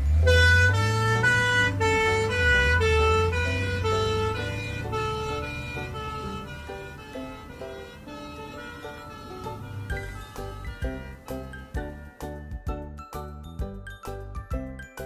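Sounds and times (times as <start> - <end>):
ambulance two-tone siren: 0.0 - 12.1
low engine rumble: 0.0 - 14.9.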